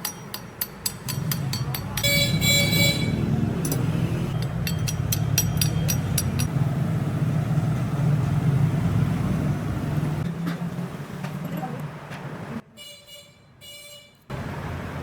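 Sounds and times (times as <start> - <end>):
road traffic noise: 0.0 - 15.0
vehicle engine running: 1.0 - 10.2.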